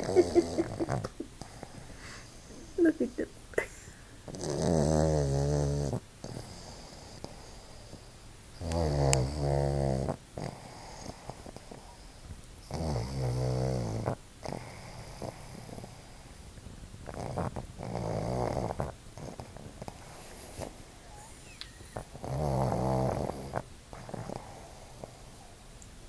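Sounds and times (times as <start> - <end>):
dog snoring: 0.0 - 2.8, 4.3 - 16.4, 17.0 - 25.5
dog breathing: 14.0 - 25.5.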